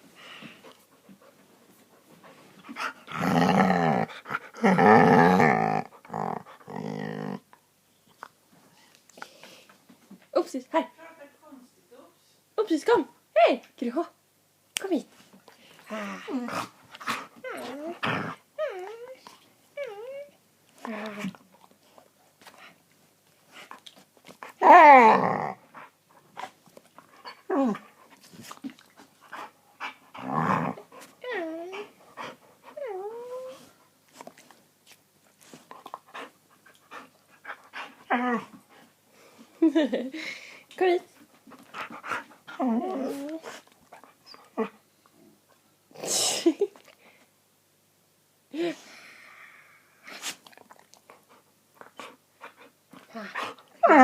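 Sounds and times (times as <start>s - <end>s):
dog howling growl: 3.1s - 7.4s, 24.6s - 25.6s.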